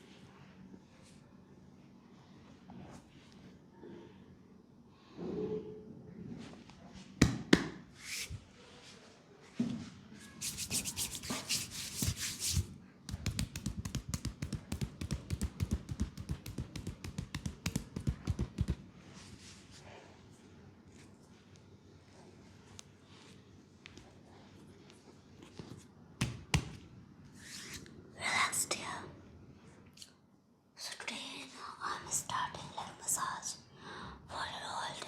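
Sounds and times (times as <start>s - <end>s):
brisk rubbing over skin: 10.4s - 18.8s
fast light taps: 13.1s - 18.8s.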